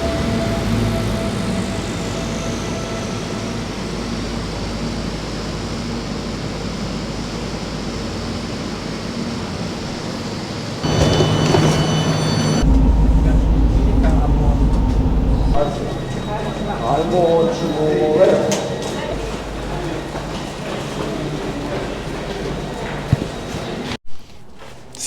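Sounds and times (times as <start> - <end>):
train wheels squealing: 0.0 - 5.0, 10.8 - 20.0
deep train rumble: 0.0 - 8.6, 9.3 - 24.0
train rumble: 0.0 - 24.0.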